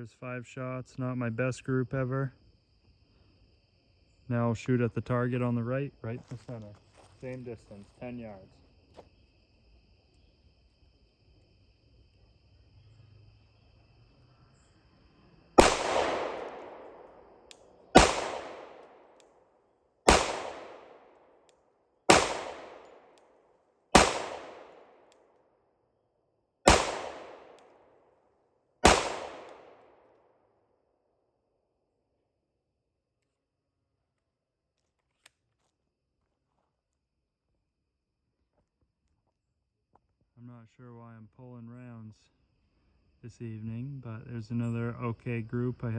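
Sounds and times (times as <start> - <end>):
pistol shots with echo: 15.6 - 19.2, 20.1 - 21.2, 22.1 - 23.2, 23.9 - 25.1, 26.7 - 27.8, 28.8 - 30.0.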